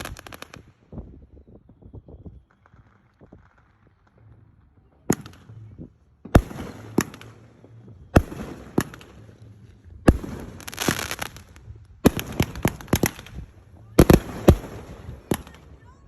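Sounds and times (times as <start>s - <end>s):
firework crackling: 0.0s - 15.9s
firework bangs: 5.1s - 15.8s.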